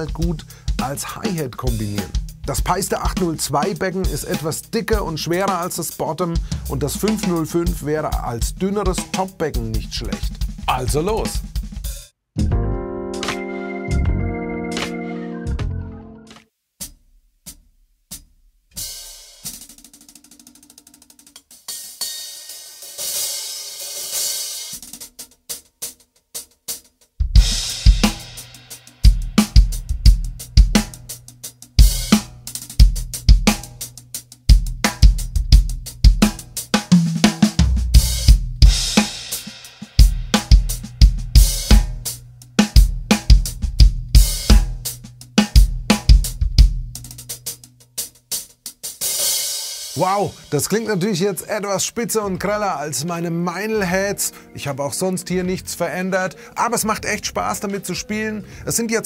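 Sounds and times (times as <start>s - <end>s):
bass drum: 0.0s - 5.4s, 6.4s - 12.8s, 27.2s - 48.3s
snare drum: 0.0s - 5.8s, 6.5s - 12.0s, 27.3s - 29.9s, 31.9s - 34.0s, 34.6s - 51.1s
hi-hat cymbals: 0.0s - 12.1s, 18.8s - 51.6s.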